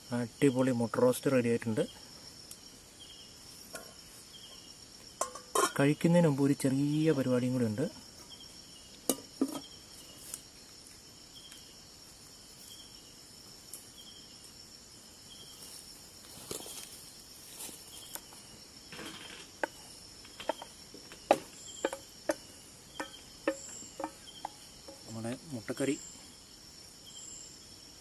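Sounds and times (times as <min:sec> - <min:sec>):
cricket chirping: 0:00.0 - 0:28.0
night insects trilling: 0:00.0 - 0:28.0
sharp clinks and knocks: 0:05.2 - 0:05.8, 0:18.9 - 0:25.1.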